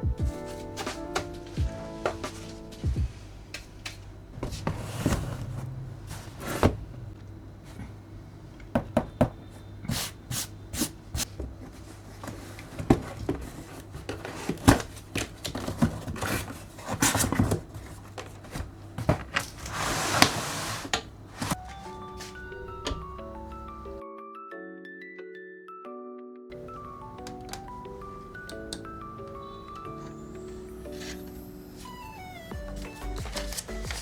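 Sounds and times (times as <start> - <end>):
scraping and rustling: 4.4 - 7.8, 9.9 - 23.8, 32.7 - 34.0.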